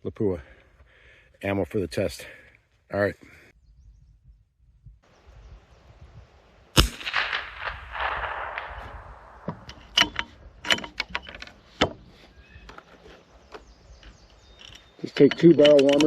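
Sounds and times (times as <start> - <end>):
rifle shot with echo: 6.7 - 9.8.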